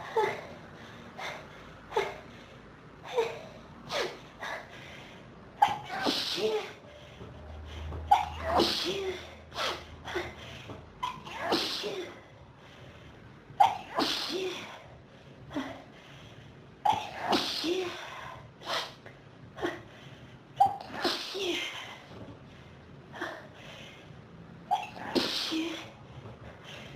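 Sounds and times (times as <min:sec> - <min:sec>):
person sneezing: 0:05.6 - 0:06.8, 0:08.1 - 0:09.8, 0:11.0 - 0:12.2, 0:13.6 - 0:14.8, 0:16.9 - 0:19.0, 0:24.7 - 0:25.9.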